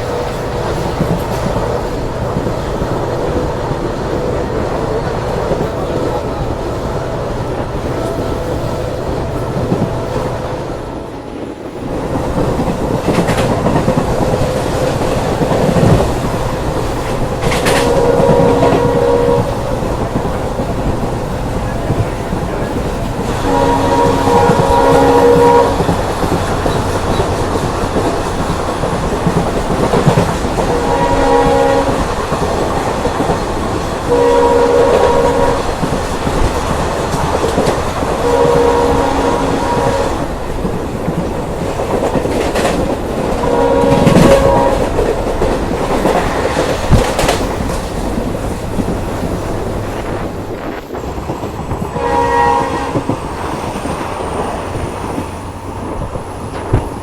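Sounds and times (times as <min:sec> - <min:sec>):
train running at speed: 0:00.0 - 0:57.0
locomotive horn blasts: 0:05.3 - 0:11.3, 0:17.4 - 0:20.2, 0:23.1 - 0:27.3, 0:30.6 - 0:32.4, 0:34.1 - 0:35.8, 0:37.6 - 0:40.3, 0:43.3 - 0:45.1, 0:51.9 - 0:53.2.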